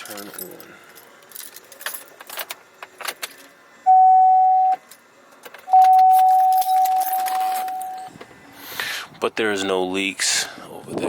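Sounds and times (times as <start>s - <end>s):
keys jingling: 0.0s - 3.5s, 4.8s - 8.1s
electronic beep: 3.9s - 4.8s, 5.7s - 8.1s.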